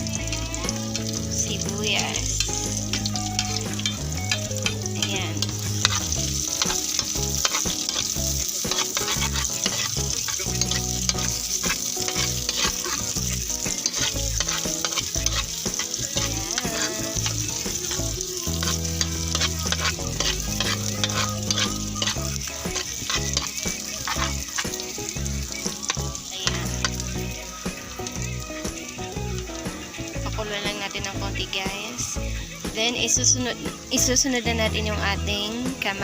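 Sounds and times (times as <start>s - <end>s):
utensil scraping a pan: 0.0s - 28.4s
garlic and onion sizzling in oil: 0.0s - 36.0s.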